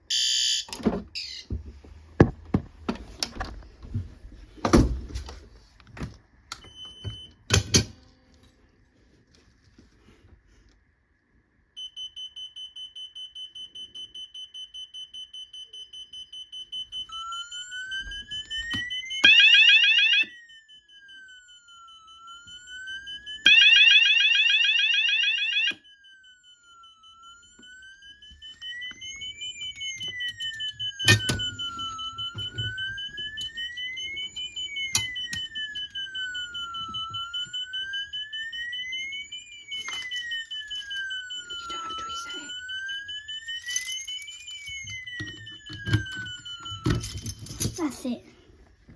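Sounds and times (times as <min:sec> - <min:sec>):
rising and falling siren tone: 0:15.2 - 0:47.4.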